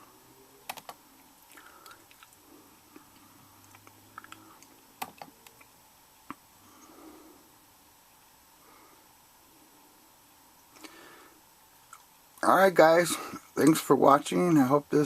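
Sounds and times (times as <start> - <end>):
laptop keyboard clicks: 3.7 - 5.7.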